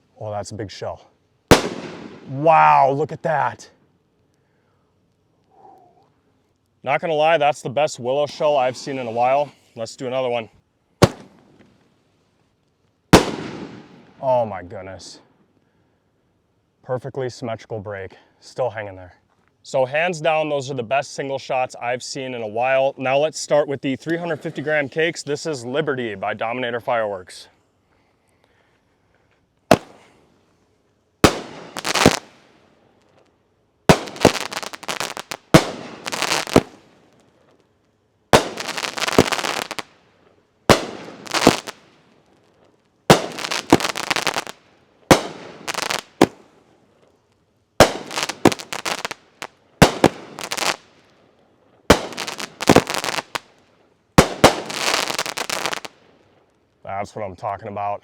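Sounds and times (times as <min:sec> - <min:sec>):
firework cake bangs: 0:01.5 - 0:02.4, 0:11.0 - 0:11.4, 0:13.2 - 0:14.0, 0:29.7 - 0:30.2, 0:31.2 - 0:32.3, 0:33.9 - 0:36.8, 0:38.4 - 0:39.8, 0:40.7 - 0:41.8, 0:43.1 - 0:44.5, 0:45.1 - 0:46.4, 0:47.8 - 0:49.2, 0:49.8 - 0:50.8, 0:51.9 - 0:53.4, 0:54.2 - 0:55.9.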